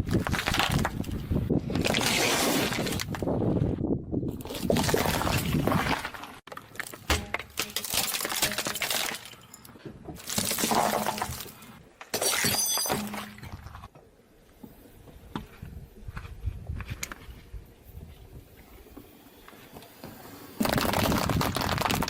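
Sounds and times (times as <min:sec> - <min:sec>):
glass crushed under tyre: 0:04.9 - 0:13.5
glass pieces crackling: 0:07.2 - 0:11.6, 0:12.2 - 0:13.3.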